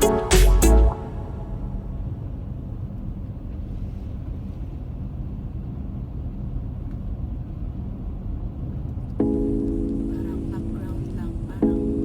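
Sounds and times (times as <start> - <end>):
faint hum: 0.0 - 5.8, 9.2 - 12.0.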